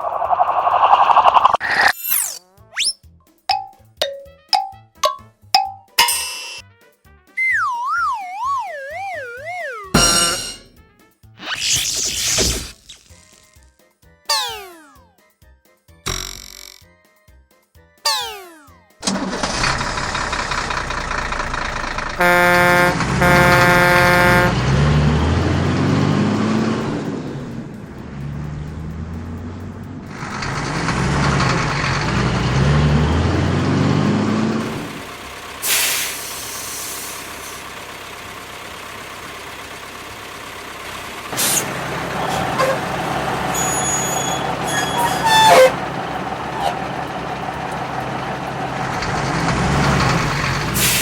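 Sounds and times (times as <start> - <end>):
falling sweep: 0.0 - 2.1
truck engine running: 19.0 - 51.0
truck horn honks: 22.0 - 25.4, 42.2 - 47.3.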